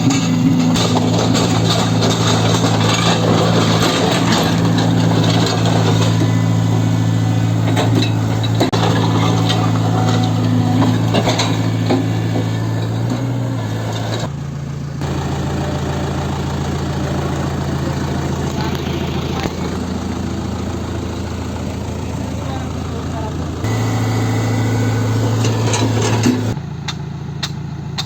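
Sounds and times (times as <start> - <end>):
metallic clanks: 0.0 - 14.3, 23.6 - 26.6
excavator diesel engine running: 0.0 - 28.0.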